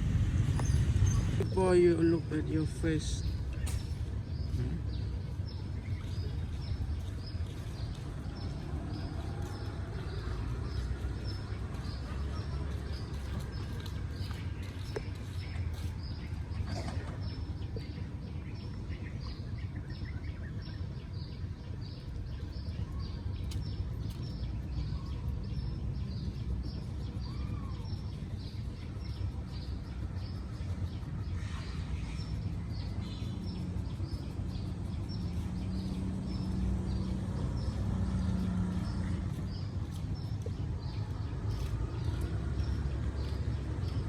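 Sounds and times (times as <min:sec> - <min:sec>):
low rumble: 0:00.0 - 0:02.4.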